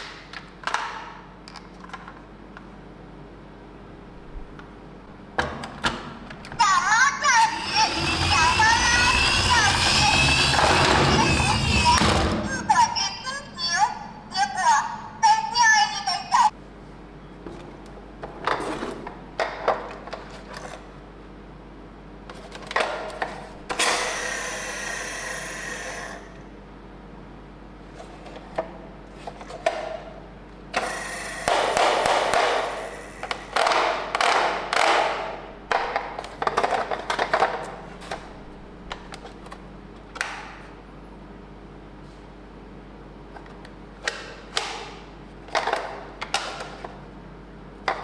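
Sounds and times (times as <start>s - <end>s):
plastic toys clicking and knocking: 30.8s - 38.2s.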